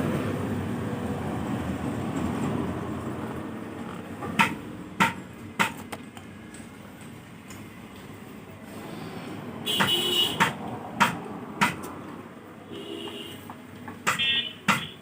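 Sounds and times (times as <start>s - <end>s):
steady background noise: 0.0s - 15.0s
sharp taps: 4.3s - 6.1s, 9.8s - 12.0s, 13.9s - 15.0s.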